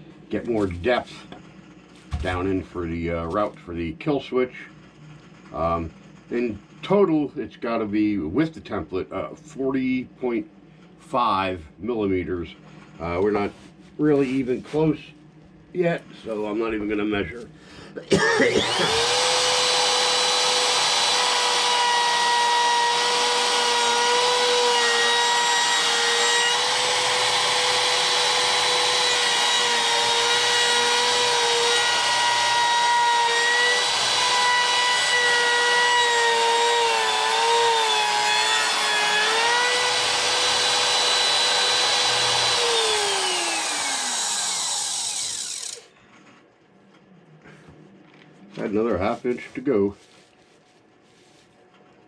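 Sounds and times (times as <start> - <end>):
wood router whining: 18.5 - 45.9.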